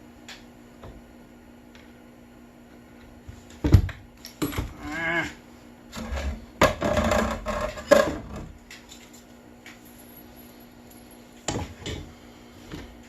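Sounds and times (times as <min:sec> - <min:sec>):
hard objects knocking and clattering: 0:06.6 - 0:08.6.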